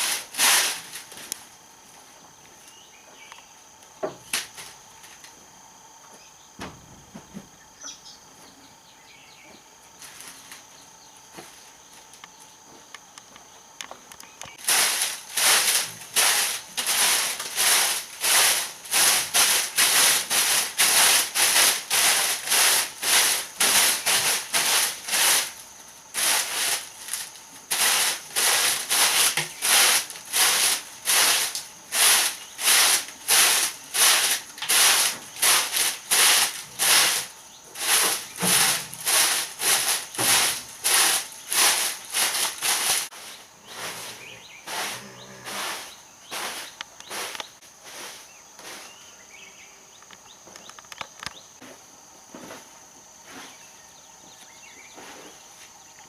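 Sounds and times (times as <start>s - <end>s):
hand tool sawing wood: 14.6s - 25.6s, 26.2s - 43.2s, 44.7s - 48.2s.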